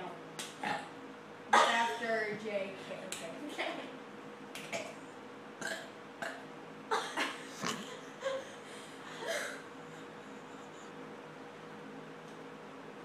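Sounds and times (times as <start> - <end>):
person burping: 5.6 - 6.4, 7.0 - 8.0
throat gulping sounds: 7.6 - 7.9.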